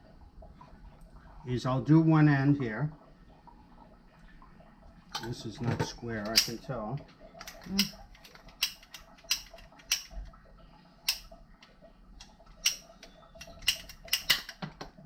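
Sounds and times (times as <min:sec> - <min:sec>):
plastic pipe fittings clicking: 0:05.1 - 0:10.4, 0:12.2 - 0:15.0.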